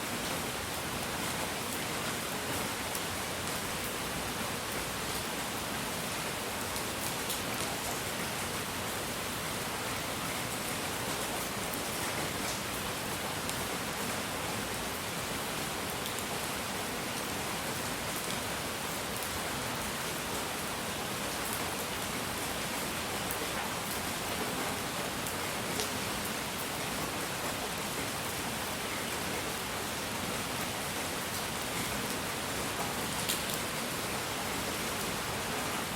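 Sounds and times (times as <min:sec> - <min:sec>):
rain-like hiss: 0:00.0 - 0:35.9.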